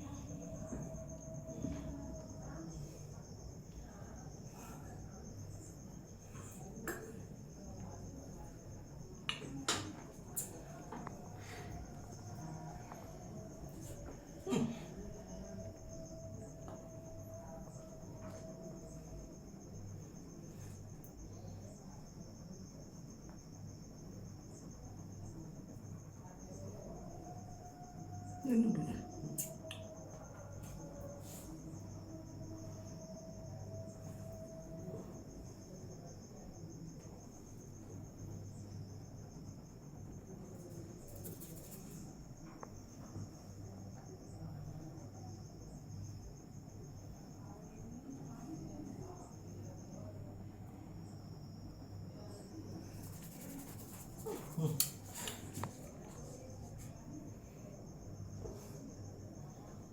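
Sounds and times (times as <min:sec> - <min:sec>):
cricket trilling: 0:00.0 - 0:59.9
insect trilling: 0:52.7 - 0:56.1.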